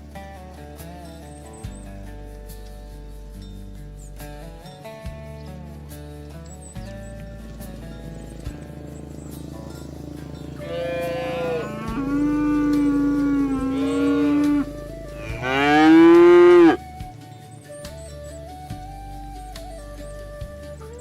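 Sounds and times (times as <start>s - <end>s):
background music: 0.0s - 21.0s
cattle mooing: 10.5s - 16.8s.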